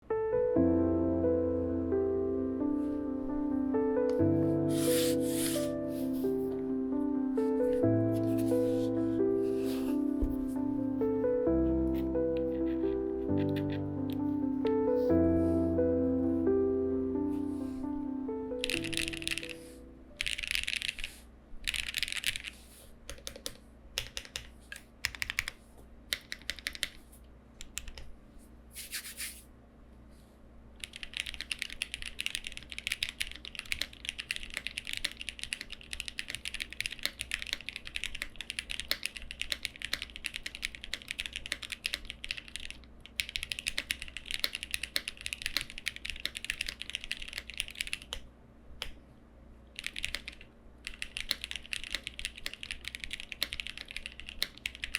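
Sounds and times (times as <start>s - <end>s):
mechanical keyboard typing: 12.0s - 14.2s, 18.6s - 27.0s, 27.6s - 28.1s, 30.8s - 48.2s, 49.8s - 54.9s.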